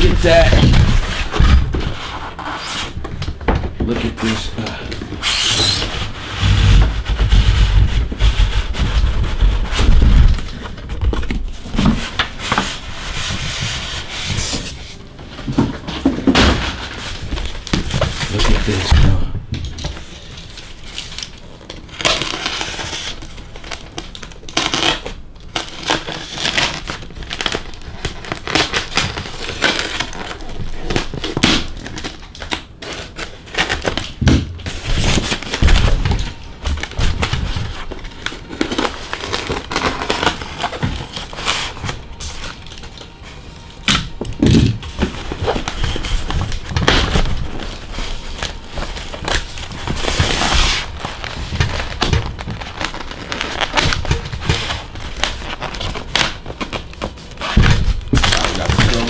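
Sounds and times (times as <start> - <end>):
box knocks and thumps: 0.0 - 2.0, 15.4 - 19.9
wrapping crinkling and rustling: 0.0 - 59.0.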